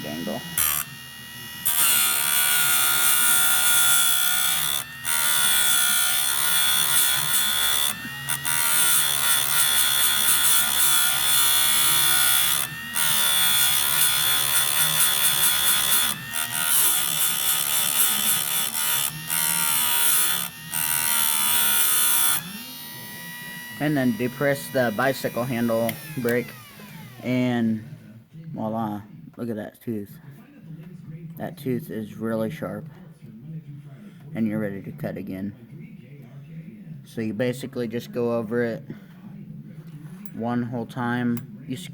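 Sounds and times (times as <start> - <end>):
grinding wheel grinding chain: 0.4 - 22.5.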